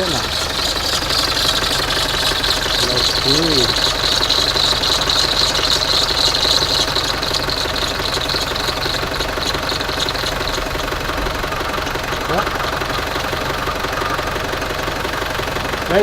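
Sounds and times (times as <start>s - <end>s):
spray can hissing: 0.0s - 11.0s
diesel engine idling: 0.0s - 16.0s.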